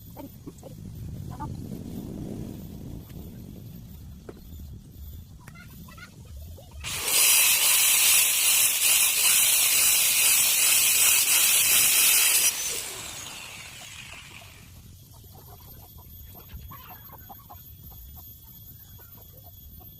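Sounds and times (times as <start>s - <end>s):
power tool hissing: 6.8s - 14.8s.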